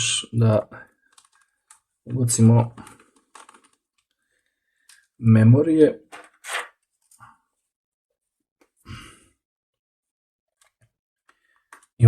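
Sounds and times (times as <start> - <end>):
breathy exhale: 8.9 - 9.3.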